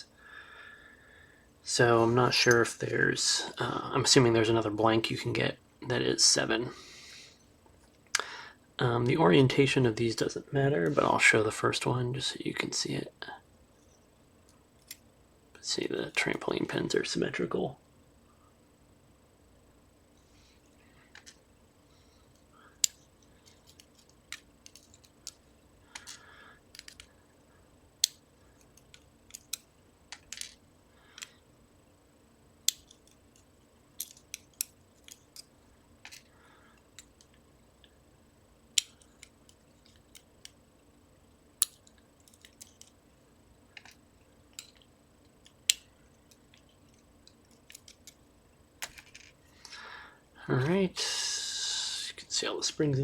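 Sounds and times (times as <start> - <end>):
small metal parts clicking: 22.3 - 27.1, 28.0 - 31.4, 32.7 - 37.4, 41.6 - 43.0, 43.7 - 48.2, 48.8 - 49.4.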